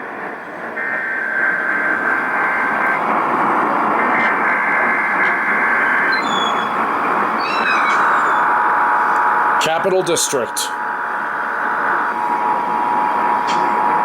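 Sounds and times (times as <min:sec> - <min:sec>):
radio static hiss: 0:00.0 - 0:14.0
buzzy digital data bursts: 0:00.8 - 0:13.4.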